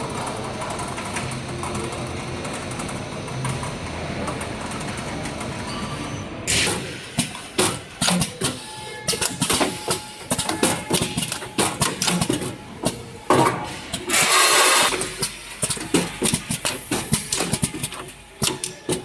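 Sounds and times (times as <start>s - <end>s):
packing machine clicking and clacking: 6.5s - 19.0s.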